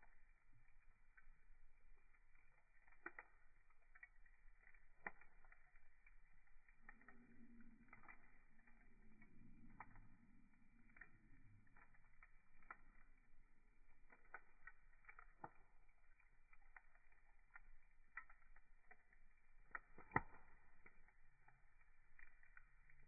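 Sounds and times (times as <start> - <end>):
fire popping: 0.0 - 23.0
wood fire crackling: 0.0 - 23.0.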